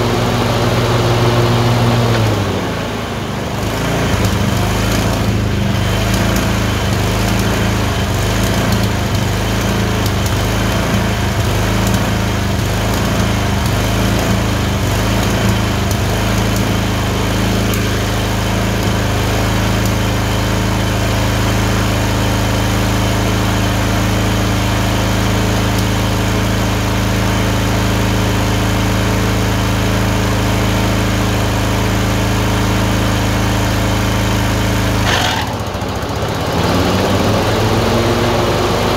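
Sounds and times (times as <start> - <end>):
twin-cylinder engine misfiring: 34.2 - 38.0.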